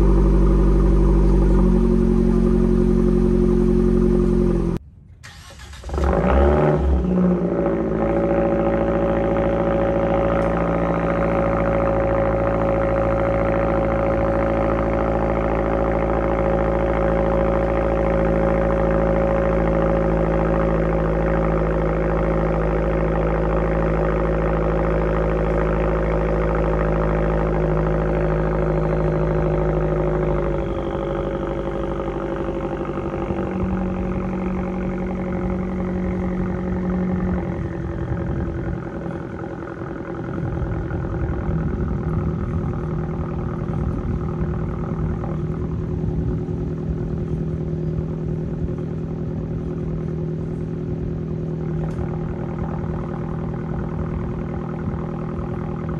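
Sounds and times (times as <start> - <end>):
car engine starting and idling: 0.0 - 55.9.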